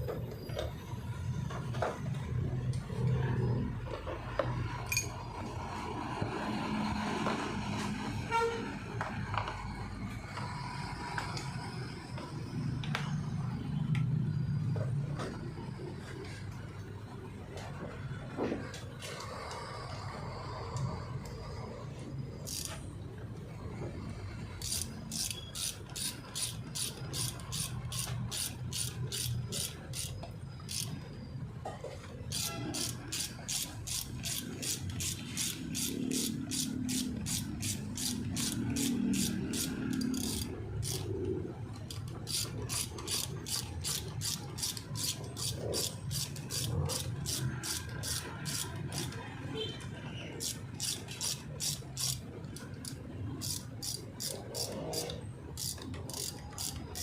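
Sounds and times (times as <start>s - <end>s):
ratchet wrench clicking: 4.8s - 5.2s, 22.4s - 22.9s, 24.6s - 31.0s, 32.3s - 49.2s, 50.4s - 57.0s.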